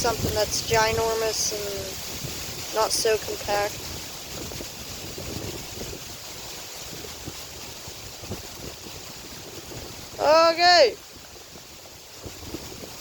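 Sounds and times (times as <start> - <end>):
wind noise on microphone: 0.0 - 13.0.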